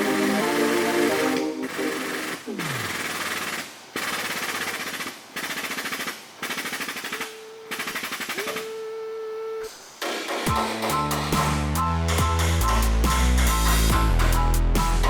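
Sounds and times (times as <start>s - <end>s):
pneumatic air tool hammering: 1.7s - 8.7s.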